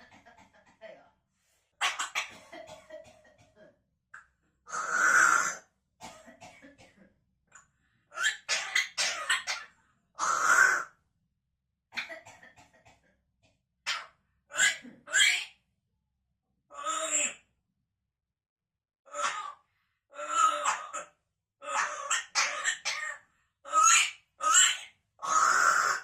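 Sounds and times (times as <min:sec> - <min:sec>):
parrot coughing: 0:01.8 - 0:02.8, 0:04.7 - 0:05.6, 0:08.2 - 0:10.9, 0:13.9 - 0:15.6, 0:19.1 - 0:19.6, 0:20.2 - 0:26.0.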